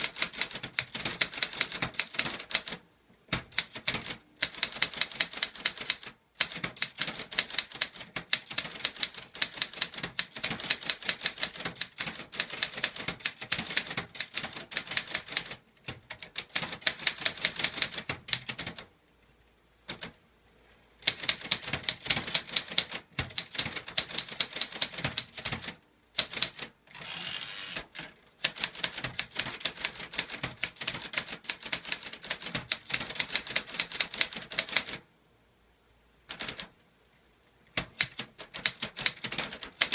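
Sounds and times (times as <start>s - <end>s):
manual typewriter typing: 0.0s - 18.9s, 21.0s - 26.8s, 27.6s - 35.0s, 36.3s - 36.7s, 37.8s - 39.9s
typebars clacking: 21.1s - 25.6s.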